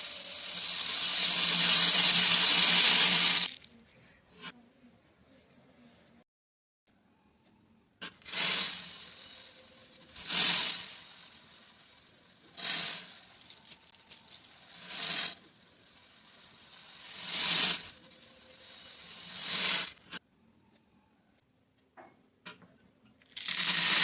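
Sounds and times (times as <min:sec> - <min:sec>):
beads being poured: 0:00.0 - 0:03.7, 0:08.3 - 0:20.2, 0:23.3 - 0:24.0.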